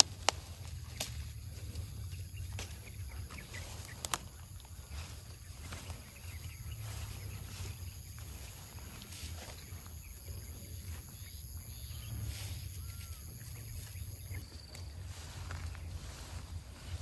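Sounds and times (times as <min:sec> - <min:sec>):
sharp clicks: 0:00.0 - 0:01.3, 0:02.5 - 0:04.5
low rumble: 0:00.0 - 0:17.0.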